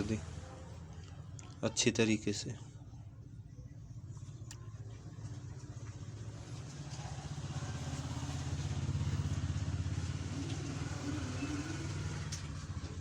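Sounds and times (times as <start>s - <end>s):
vehicle engine pulsing: 2.7s - 13.0s.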